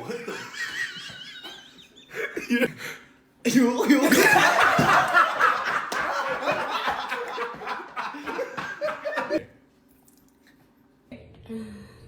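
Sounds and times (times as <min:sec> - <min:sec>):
people laughing hard: 0:04.0 - 0:09.4.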